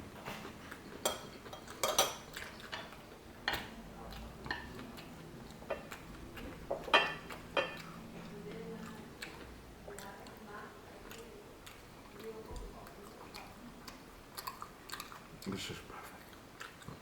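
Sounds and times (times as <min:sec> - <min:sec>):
faint steady hum: 0:00.0 - 0:17.0
utensils clinking on dishes: 0:01.0 - 0:03.7, 0:06.6 - 0:08.2.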